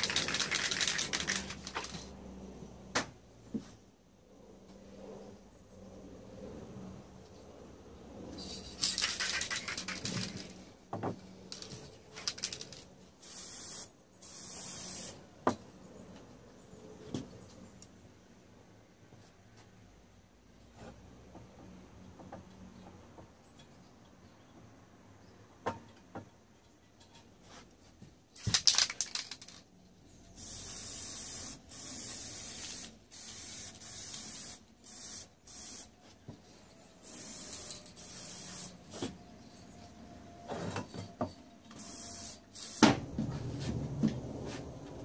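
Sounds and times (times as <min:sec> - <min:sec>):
hissing spray bursts: 0:13.2 - 0:15.2, 0:30.4 - 0:36.0, 0:37.0 - 0:39.1, 0:41.8 - 0:43.0.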